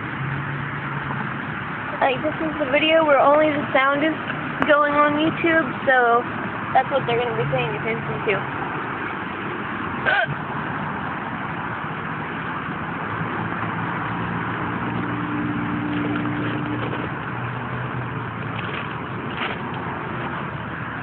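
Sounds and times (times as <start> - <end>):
car road and engine noise: 0.0 - 21.0
person hiccuping: 10.0 - 10.4.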